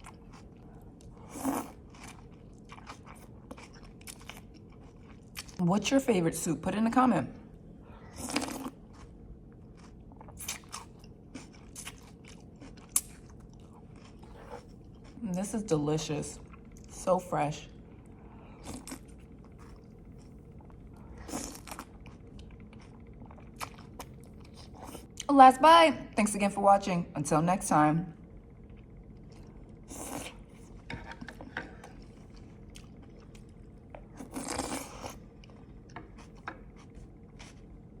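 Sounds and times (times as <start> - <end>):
crunchy chewing of raw vegetables: 0.0 - 5.6, 8.1 - 15.2, 18.6 - 25.3, 28.6 - 38.0.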